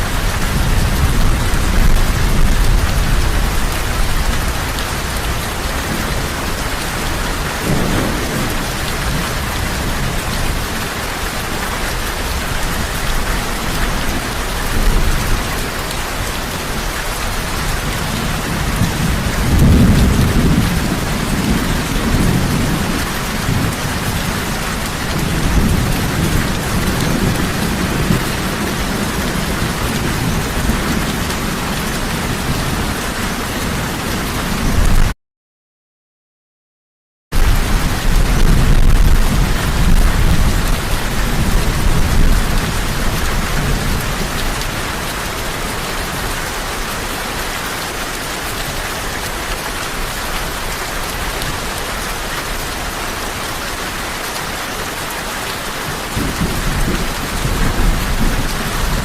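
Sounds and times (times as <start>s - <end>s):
thunder rumbling: 0.0s - 35.1s, 37.4s - 45.1s, 55.9s - 59.0s
heavy rain falling: 0.0s - 35.2s, 37.4s - 59.0s.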